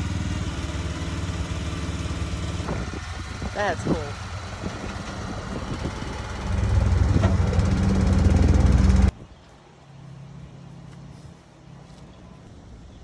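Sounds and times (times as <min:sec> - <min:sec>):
vehicle engine rumbling: 0:00.0 - 0:09.2.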